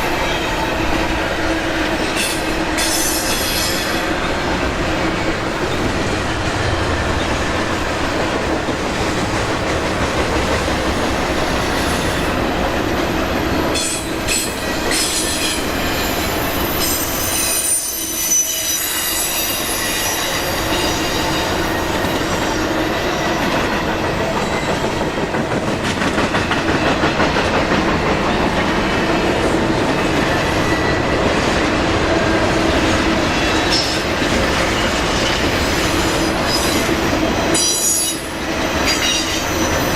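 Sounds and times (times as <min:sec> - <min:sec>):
train wheels squealing on rail: 0:00.0 - 0:06.2, 0:11.0 - 0:25.3, 0:28.8 - 0:31.2, 0:32.2 - 0:39.9
freight train rumbling past: 0:00.0 - 0:39.9.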